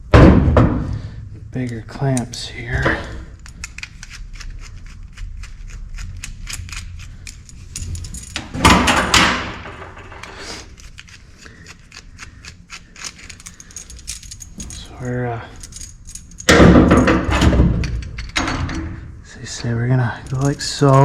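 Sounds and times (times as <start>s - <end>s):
scraping metallic rattle: 1.5s - 21.0s
metal hose clamps clicking: 20.2s - 21.0s.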